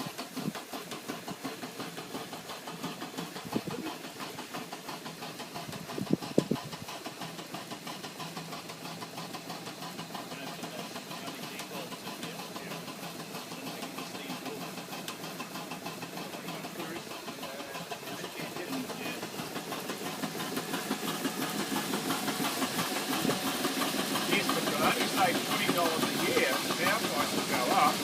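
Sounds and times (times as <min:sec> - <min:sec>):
engine running with fast beat: 0:00.0 - 0:28.0.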